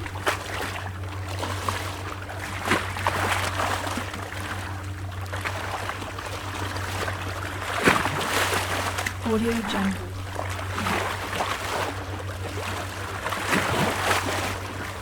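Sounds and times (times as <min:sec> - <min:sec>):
waves splashing against rocks: 0:00.0 - 0:00.8
low steady hum: 0:00.0 - 0:15.0.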